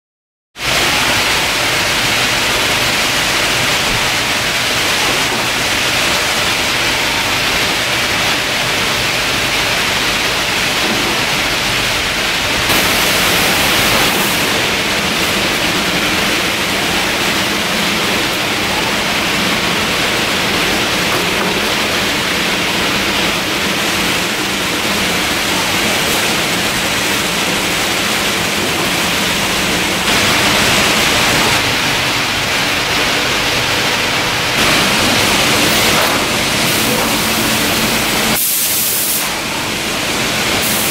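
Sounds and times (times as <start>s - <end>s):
machinery hiss: 12.6s - 19.0s, 23.8s - 40.9s.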